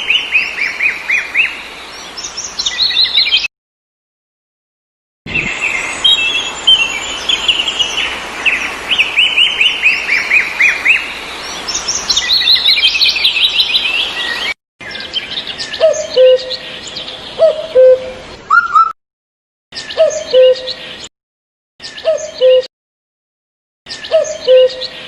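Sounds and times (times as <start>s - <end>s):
small birds chirping: 0.0s - 3.5s, 5.3s - 19.0s, 21.8s - 22.7s
low hooting bird call: 17.4s - 19.0s, 24.1s - 25.0s.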